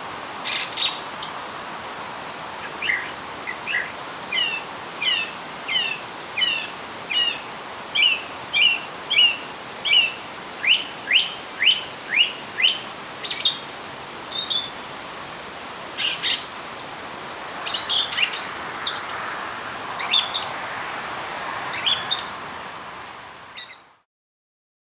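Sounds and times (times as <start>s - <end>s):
birds chirping and trilling: 2.6s - 7.4s, 8.0s - 15.0s, 17.6s - 19.3s, 20.0s - 21.0s, 21.8s - 22.7s, 23.6s - 23.9s.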